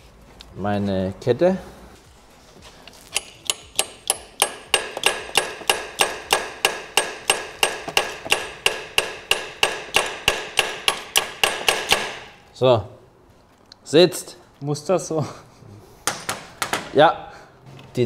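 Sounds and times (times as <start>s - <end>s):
hammer tapping metal: 3.1s - 12.4s.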